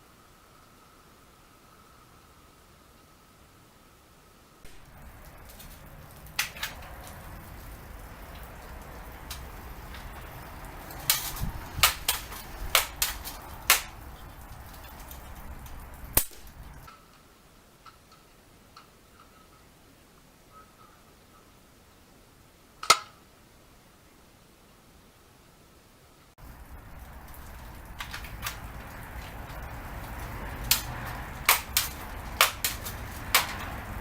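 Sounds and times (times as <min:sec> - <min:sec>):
low background noise: 0:00.0 - 0:34.0
air rifle shots cracking: 0:11.0 - 0:14.1, 0:16.2 - 0:16.8.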